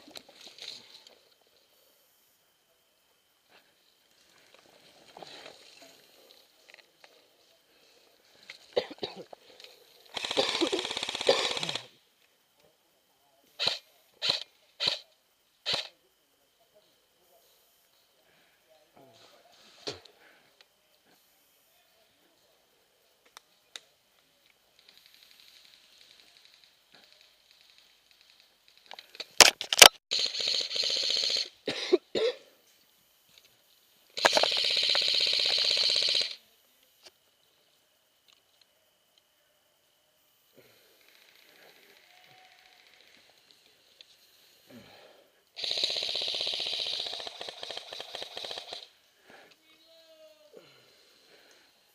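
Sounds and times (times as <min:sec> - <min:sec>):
airsoft gun full-auto burst: 0:10.1 - 0:11.9, 0:13.6 - 0:15.0, 0:15.6 - 0:15.9, 0:29.4 - 0:31.6, 0:34.2 - 0:36.4, 0:45.6 - 0:48.9.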